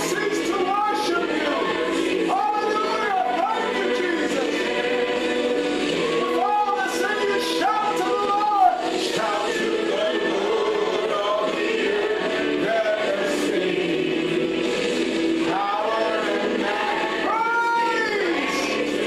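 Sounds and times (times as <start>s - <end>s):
choir singing gospel music: 0.0s - 19.0s.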